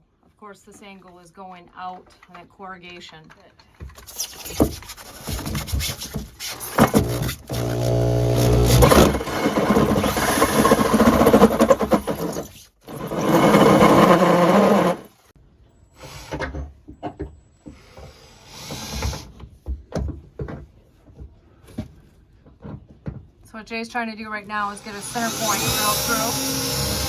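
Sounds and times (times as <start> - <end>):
power drill grinding through steel: 6.5 - 15.2, 24.6 - 27.0.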